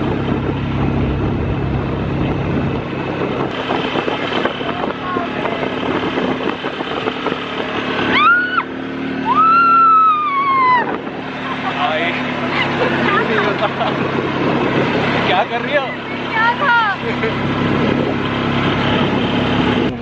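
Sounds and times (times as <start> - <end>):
atv engine running: 0.0 - 20.0
person whooping: 8.1 - 11.0.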